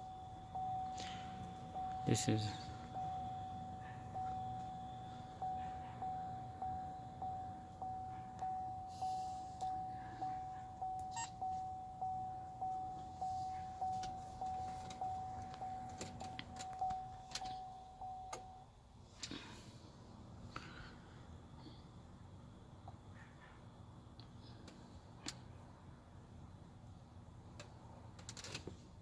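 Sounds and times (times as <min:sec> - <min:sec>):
car warning chime dinging: 0:00.0 - 0:18.8.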